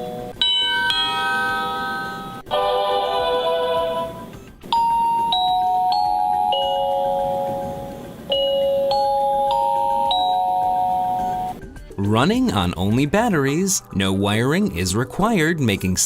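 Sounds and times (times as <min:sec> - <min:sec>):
door chime ringing tones: 0:00.0 - 0:11.6.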